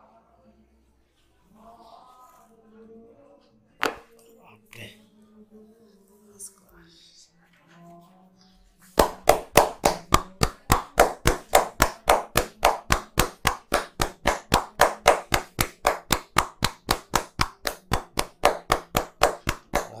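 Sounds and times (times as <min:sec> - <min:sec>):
hands tapping a head: 0:03.8 - 0:04.1, 0:08.9 - 0:20.0.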